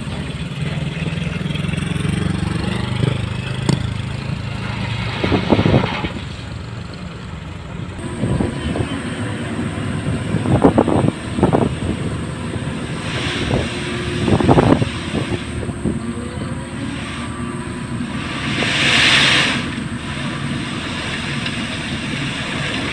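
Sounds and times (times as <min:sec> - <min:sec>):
diesel engine rattling: 0:00.0 - 0:22.9
rushing hiss: 0:16.7 - 0:22.9.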